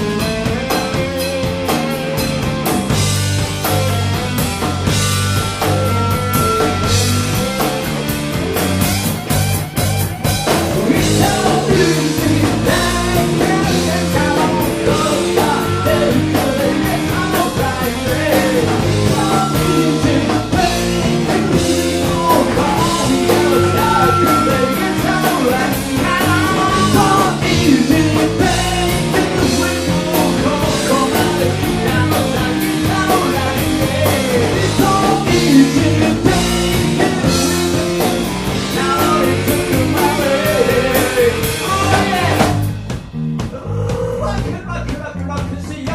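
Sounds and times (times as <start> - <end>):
drums keeping a steady beat: 0.0 - 45.9
rock band playing live: 0.0 - 45.9
person singing: 10.7 - 42.6.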